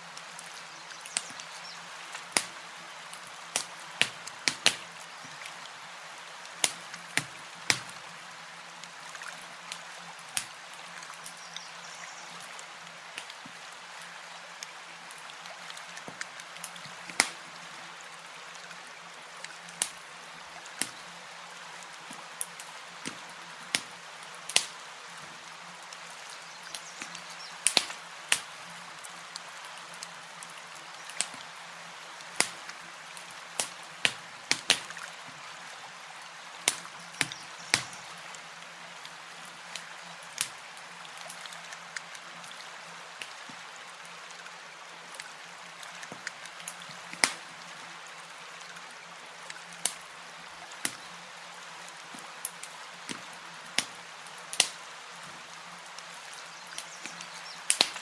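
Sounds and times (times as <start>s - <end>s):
campfire crackling and popping: 0.1s - 5.6s, 6.5s - 8.1s, 9.7s - 11.7s, 14.6s - 17.6s, 19.4s - 20.1s, 20.7s - 21.2s, 21.9s - 25.3s, 25.9s - 31.5s, 32.2s - 35.3s, 36.6s - 38.2s, 39.6s - 42.2s, 45.1s - 47.5s, 49.8s - 50.1s, 50.8s - 51.1s, 52.1s - 58.0s.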